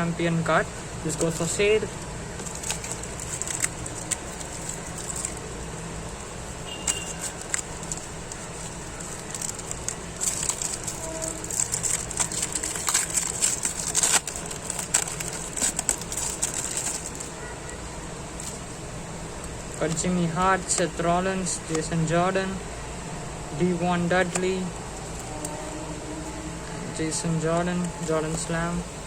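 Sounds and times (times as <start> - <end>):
foil packet tearing and crinkling: 1.1 - 17.5
cards clicking: 2.4 - 5.7, 6.7 - 17.3.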